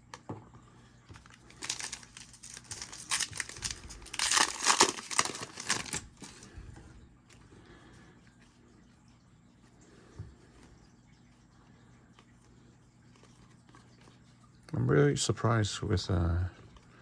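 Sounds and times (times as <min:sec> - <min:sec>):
foil wrapper crinkling: 0:01.1 - 0:06.5.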